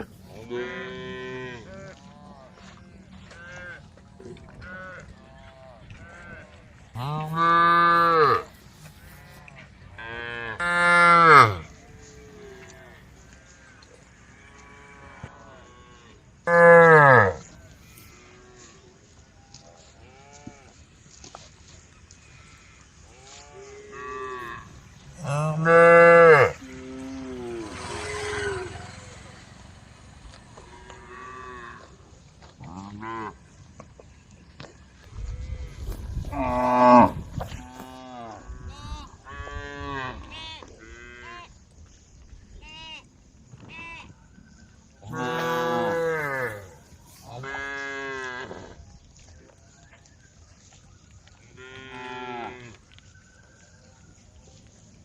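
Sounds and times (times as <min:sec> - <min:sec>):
cattle mooing: 0:06.0 - 0:08.5, 0:09.1 - 0:13.0, 0:14.2 - 0:18.7, 0:22.4 - 0:29.3, 0:36.3 - 0:38.5, 0:45.1 - 0:48.7.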